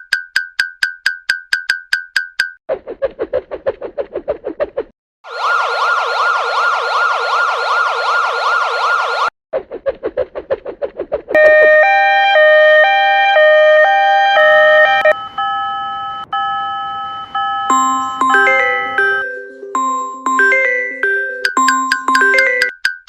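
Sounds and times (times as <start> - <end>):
electronic siren warbling: 5.3 - 9.3, 11.4 - 21.5
bell-like chime melody: 17.4 - 22.8.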